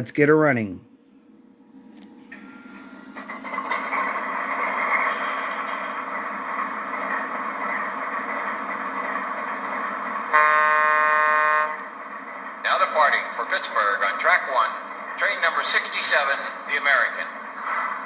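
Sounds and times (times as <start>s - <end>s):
locomotive horn blast: 10.3s - 11.9s.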